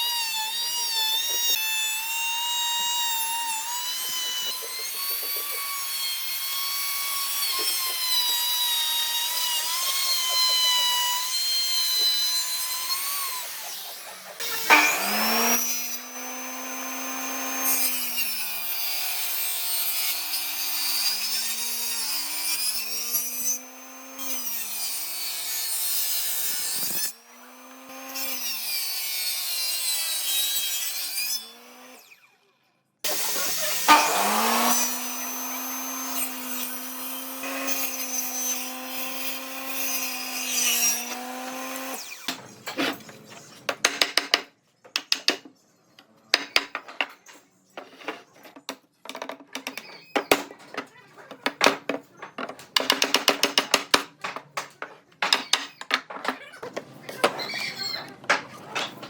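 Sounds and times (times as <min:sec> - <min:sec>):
power tool cutting wood: 0:00.0 - 0:44.1.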